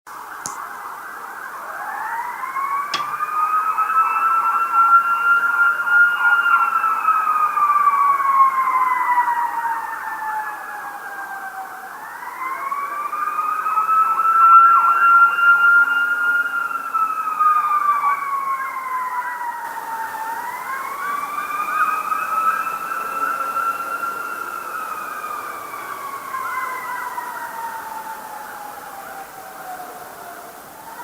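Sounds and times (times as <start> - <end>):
police siren wailing: 0.2 - 31.0
brief click: 3.0 - 3.3.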